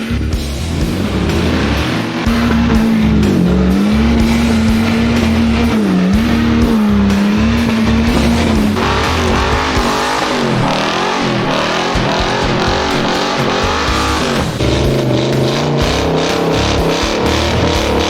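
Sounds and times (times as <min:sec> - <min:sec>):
background music: 0:00.0 - 0:18.0
engine revving high: 0:00.0 - 0:18.0.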